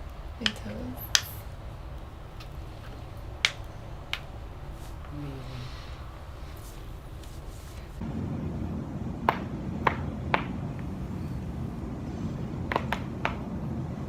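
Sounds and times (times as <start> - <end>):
joints cracking: 0.0 - 8.0
low background hum: 0.0 - 14.0.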